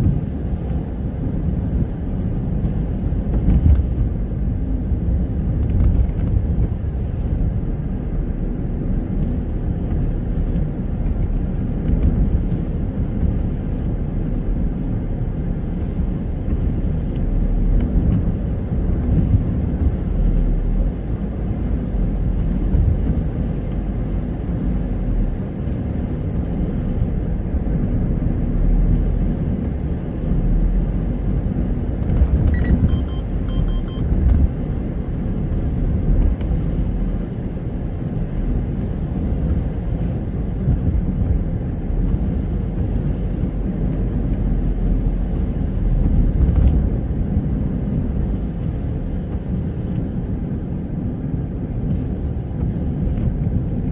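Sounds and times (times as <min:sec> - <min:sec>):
car engine and road noise: 0:00.0 - 0:53.9
short faint beeps: 0:32.5 - 0:34.1.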